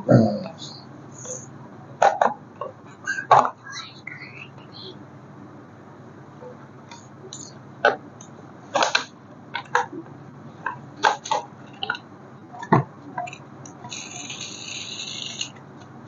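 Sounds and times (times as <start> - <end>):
steady high rasp: 13.8 - 15.6.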